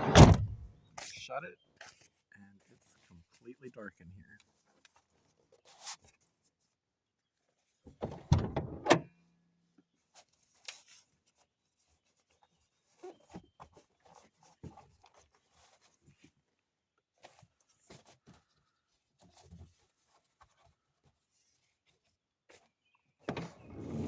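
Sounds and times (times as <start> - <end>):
van door scraping: 0.0 - 0.6, 23.3 - 24.0
sharp thuds: 0.0 - 0.7
rustles of handling: 1.0 - 8.0, 9.8 - 23.7.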